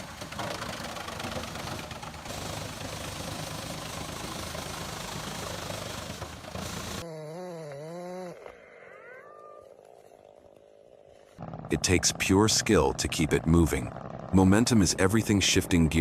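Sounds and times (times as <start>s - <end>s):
wood chipper running: 0.0s - 7.0s, 11.4s - 15.0s.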